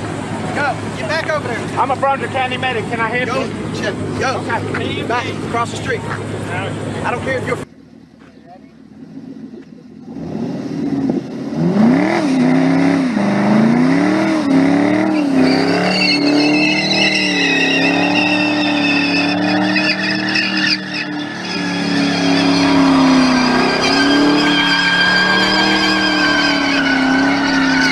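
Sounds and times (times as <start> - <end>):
car engine revving: 0.0 - 7.7, 8.8 - 27.9
tyres squealing: 14.2 - 27.9.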